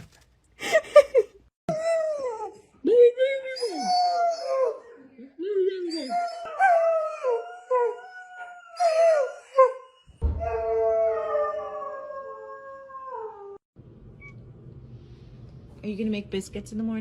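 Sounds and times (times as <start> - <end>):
dog yipping and howling: 5.9 - 13.6.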